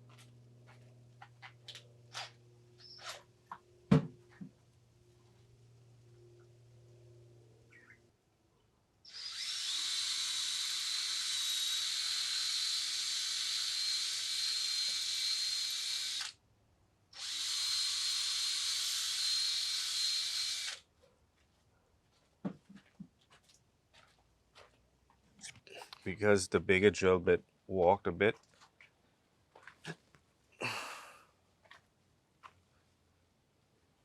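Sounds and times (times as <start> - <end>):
electric drill boring into bolt: 9.1 - 16.4, 17.2 - 20.8.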